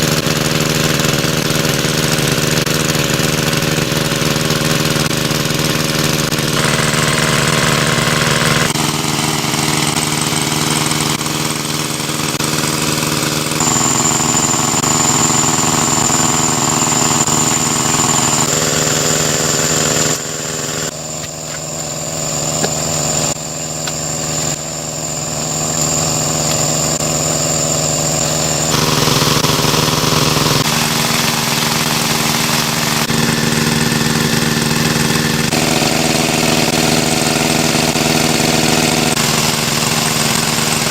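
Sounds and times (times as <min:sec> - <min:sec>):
water pump engine running: 0:00.0 - 0:40.9.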